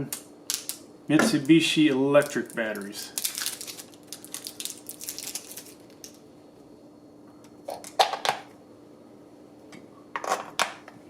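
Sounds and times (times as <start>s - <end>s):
plastic blister pack crinkling: 0.1s - 6.2s.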